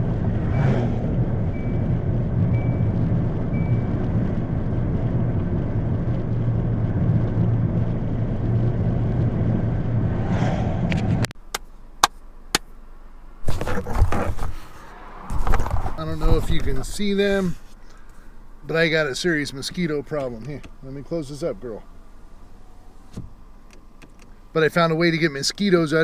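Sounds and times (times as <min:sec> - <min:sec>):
car engine and road noise: 0:00.0 - 0:26.0
brief rustle: 0:13.4 - 0:16.8.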